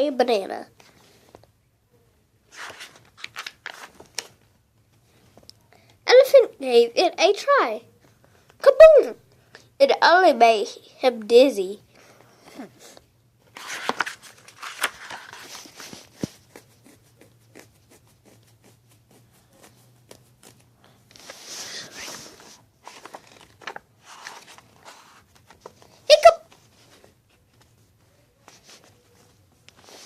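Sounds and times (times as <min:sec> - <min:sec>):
rustling handling noise: 0:02.5 - 0:05.5, 0:12.8 - 0:30.0.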